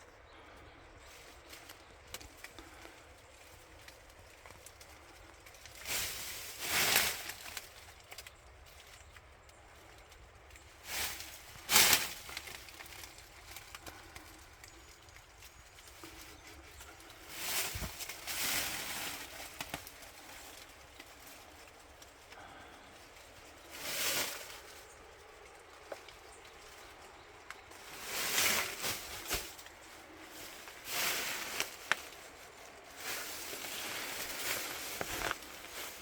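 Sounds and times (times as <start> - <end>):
rustling bursts: 1.5 - 8.8, 15.8 - 22.3, 23.0 - 36.0.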